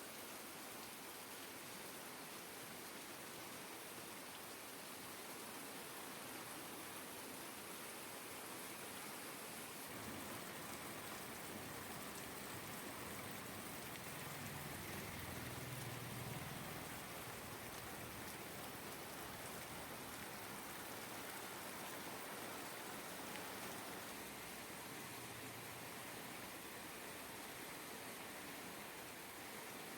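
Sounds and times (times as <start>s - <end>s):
steady rain falling: 0.0s - 29.9s.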